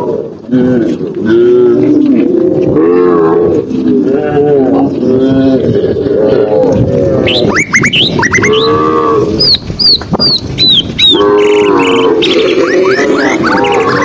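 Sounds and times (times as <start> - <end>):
cows mooing: 0.0 - 9.6, 10.4 - 14.0
birds chirping: 7.1 - 14.0.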